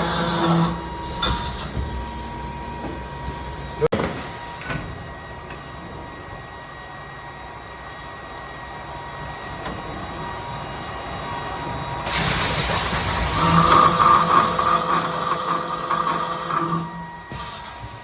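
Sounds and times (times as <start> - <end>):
tube saw machine hum: 5.1 - 18.0.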